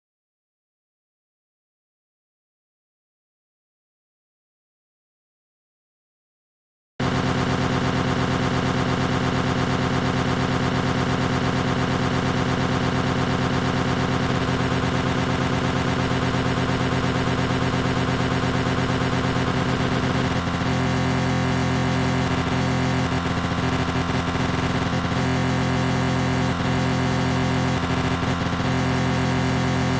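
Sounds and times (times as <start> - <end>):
electric lawn mower running: 7.0 - 29.9.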